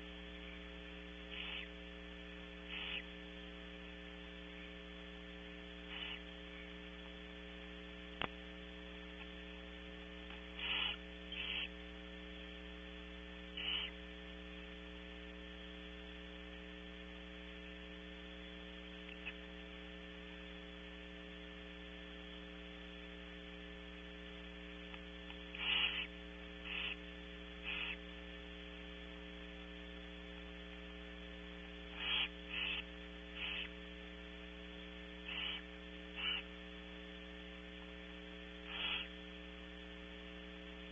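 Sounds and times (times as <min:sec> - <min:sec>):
electrical hum: 0:00.0 - 0:40.9
owls hissing calls: 0:01.3 - 0:01.7, 0:02.7 - 0:03.1, 0:05.9 - 0:06.3, 0:10.6 - 0:11.7, 0:13.6 - 0:14.0, 0:25.5 - 0:27.0, 0:27.6 - 0:28.0, 0:31.9 - 0:33.7, 0:35.2 - 0:35.6, 0:36.2 - 0:36.5, 0:38.6 - 0:39.1.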